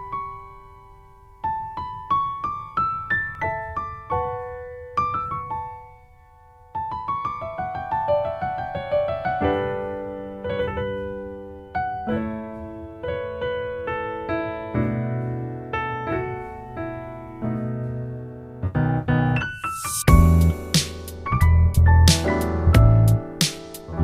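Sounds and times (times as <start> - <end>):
piano music: 0.0 - 24.0.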